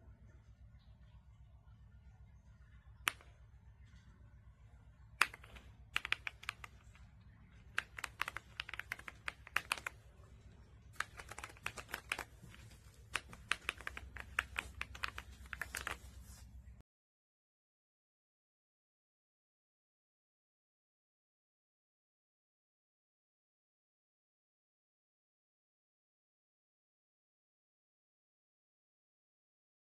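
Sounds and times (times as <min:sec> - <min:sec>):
mechanical keyboard typing: 0:03.1 - 0:03.3, 0:05.2 - 0:10.2, 0:10.9 - 0:16.2.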